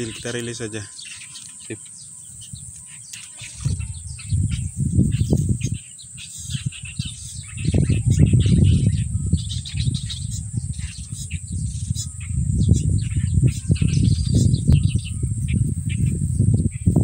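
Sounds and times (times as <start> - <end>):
birds chirping: 0.0 - 17.0
high insect buzz: 0.0 - 17.0
low rumbling on microphone: 3.4 - 5.8, 6.5 - 17.0.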